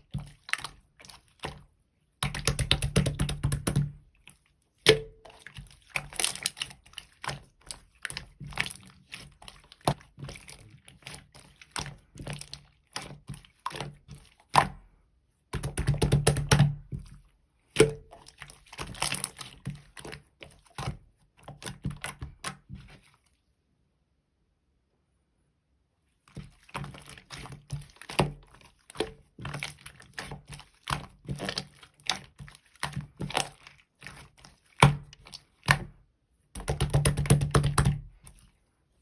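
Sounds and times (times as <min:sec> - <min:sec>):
slime squished by hand: 0:00.0 - 0:14.9, 0:26.3 - 0:36.0.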